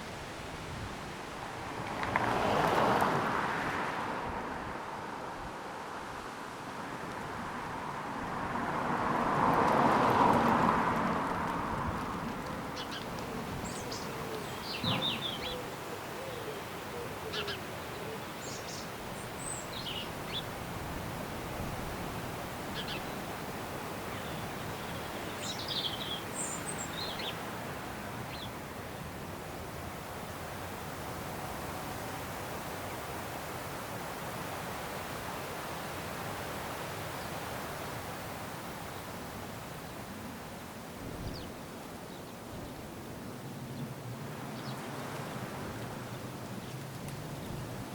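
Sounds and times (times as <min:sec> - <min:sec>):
small birds chirping: 0:12.5 - 0:20.5, 0:22.7 - 0:23.3, 0:24.0 - 0:27.4.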